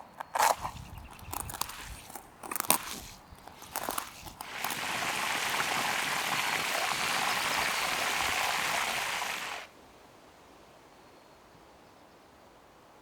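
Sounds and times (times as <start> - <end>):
deep-frying oil sizzling: 4.4 - 9.7.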